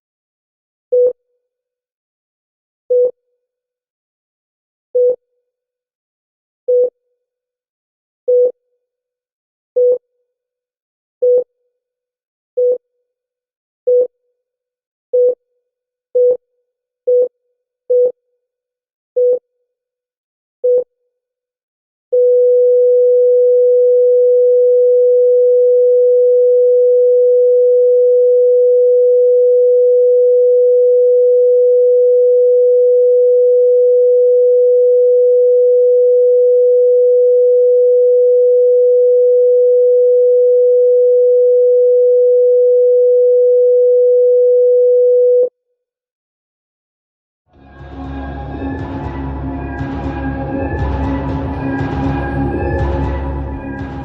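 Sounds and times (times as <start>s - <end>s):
heart monitor beeps: 0.9s - 1.2s, 2.9s - 3.2s, 5.0s - 5.2s, 6.7s - 7.0s, 8.3s - 8.6s, 9.8s - 10.0s, 11.2s - 11.5s, 12.6s - 12.8s, 13.9s - 14.1s, 15.2s - 15.4s, 16.2s - 16.4s, 17.1s - 18.2s, 19.2s - 19.4s, 20.6s - 20.9s
heart monitor flatline tone: 2.9s - 3.2s, 5.0s - 5.2s, 6.7s - 7.0s, 8.3s - 8.6s, 9.8s - 10.0s, 11.2s - 11.5s, 15.2s - 15.4s, 16.2s - 16.4s, 17.1s - 17.3s, 17.9s - 18.2s, 19.2s - 19.4s, 22.2s - 45.5s.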